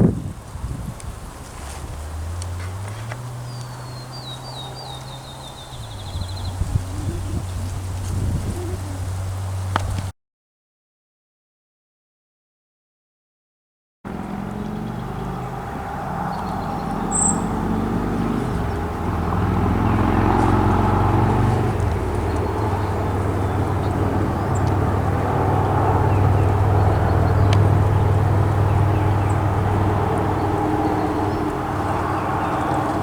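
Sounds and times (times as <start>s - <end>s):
vehicle engine running: 0.0s - 10.1s, 14.1s - 33.0s.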